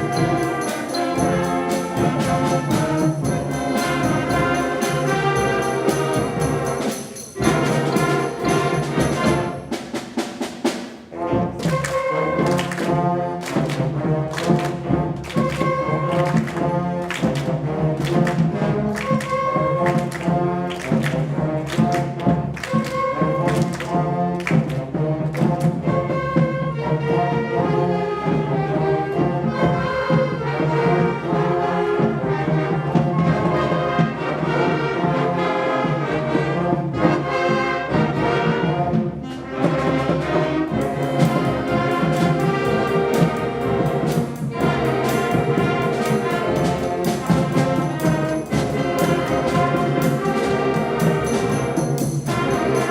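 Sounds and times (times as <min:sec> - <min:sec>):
drum strokes: 0:00.0 - 0:26.6, 0:37.9 - 0:52.9
concert band playing: 0:00.0 - 0:52.9.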